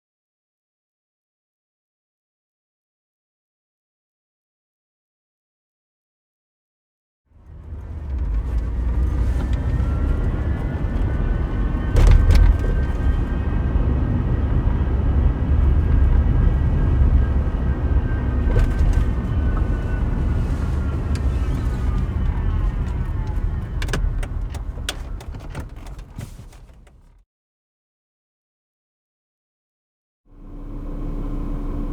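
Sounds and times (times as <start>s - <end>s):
car road and engine rumble: 7.3s - 27.2s, 30.3s - 31.9s
whine of several tones: 7.8s - 26.0s.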